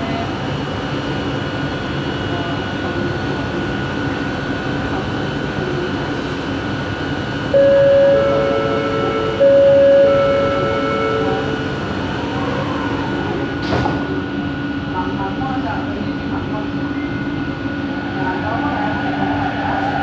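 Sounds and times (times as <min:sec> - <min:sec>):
train rumbling: 0:00.0 - 0:20.0
high steady whine: 0:07.4 - 0:12.4
loud mid-pitched tone: 0:07.5 - 0:12.2.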